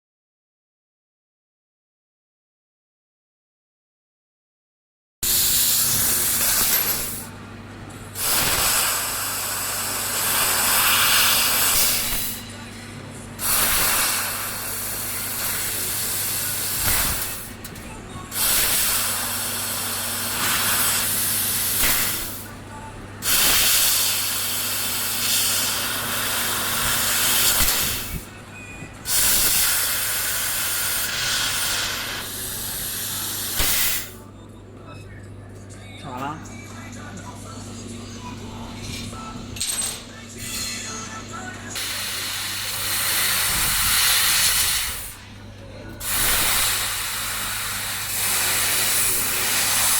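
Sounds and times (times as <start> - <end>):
laser cutter hissing: 5.2 - 7.4, 8.1 - 12.4, 13.4 - 17.6, 18.2 - 22.6, 23.2 - 28.4, 29.0 - 34.3, 40.3 - 45.4, 46.0 - 49.9.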